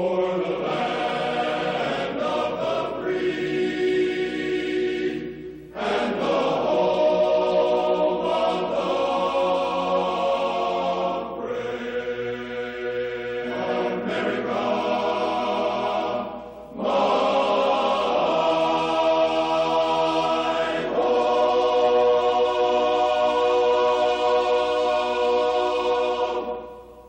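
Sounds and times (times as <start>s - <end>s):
choir singing long chords: 0.0s - 27.0s.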